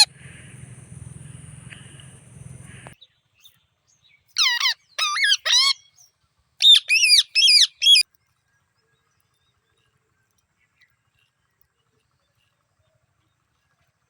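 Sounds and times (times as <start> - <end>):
parakeet squawking: 0.0 - 0.2, 4.4 - 5.8, 6.6 - 8.0.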